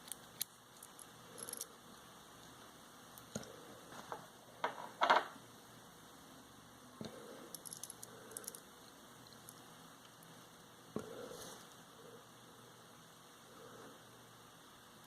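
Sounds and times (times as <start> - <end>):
small parts clicking and rustling: 0.0 - 1.8, 7.5 - 10.3.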